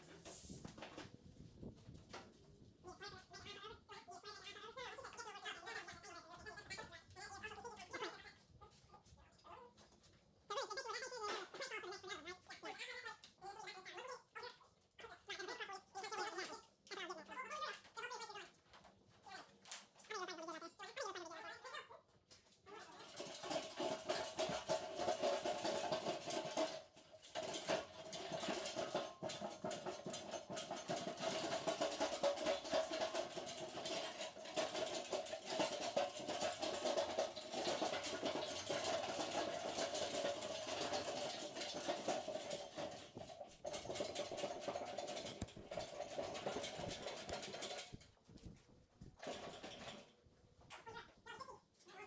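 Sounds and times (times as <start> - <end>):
power tool rattling: 23.3 - 48.1.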